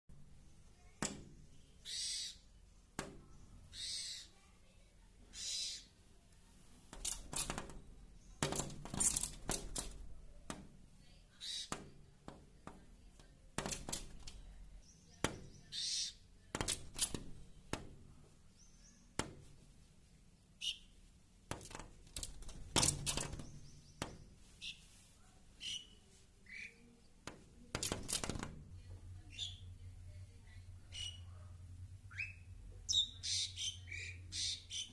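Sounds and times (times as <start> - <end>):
bird chirping calls: 0.5 - 4.4, 5.2 - 6.0, 11.3 - 11.8, 13.7 - 17.2, 20.5 - 21.0, 22.3 - 24.9, 25.5 - 27.1, 29.2 - 29.9, 30.8 - 34.9
bird tapping on glass: 7.0 - 10.8, 13.6 - 14.4, 21.5 - 24.3.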